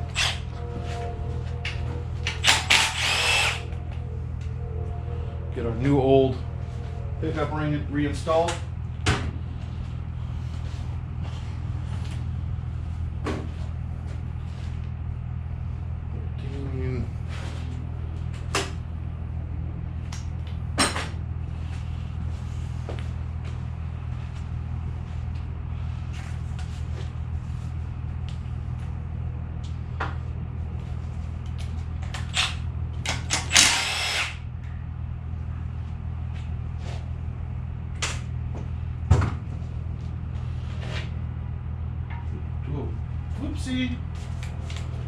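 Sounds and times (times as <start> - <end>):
steady low hum: 0.0 - 45.0
power tool burst: 2.4 - 3.6, 33.4 - 34.4.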